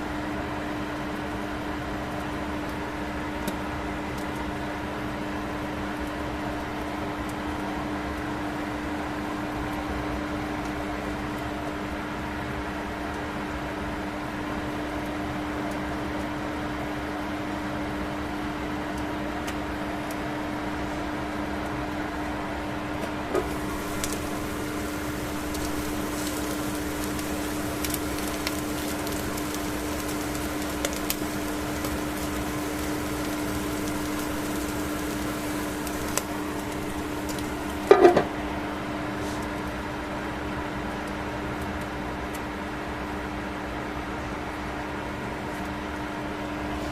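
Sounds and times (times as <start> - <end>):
microwave oven humming: 0.0 - 46.9
fish crackling and popping: 23.3 - 38.3.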